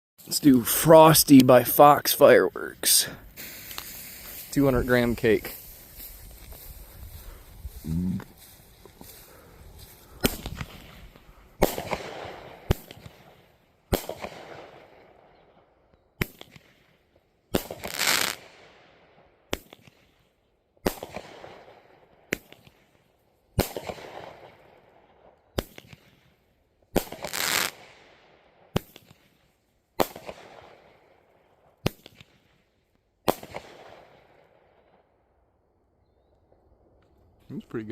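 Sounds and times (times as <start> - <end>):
firework burst hissing: 3.2 - 4.6
firework shots launching: 3.3 - 4.5, 10.2 - 15.0, 16.2 - 16.8, 17.5 - 18.8, 19.5 - 20.1, 20.8 - 22.8, 23.6 - 24.6, 25.6 - 26.2, 26.9 - 28.0, 28.7 - 29.3, 30.0 - 30.9, 31.8 - 32.5, 33.2 - 34.3.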